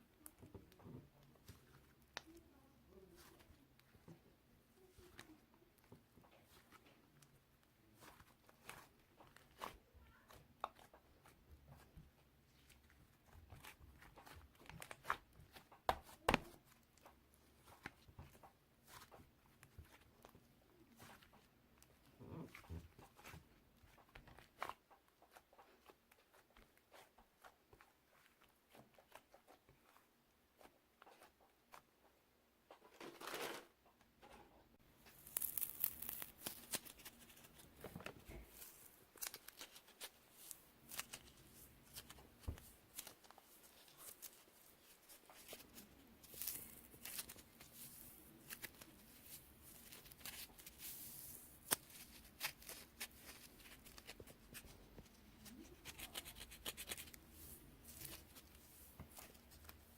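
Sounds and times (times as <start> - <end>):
rustling: 34.8 - 59.9.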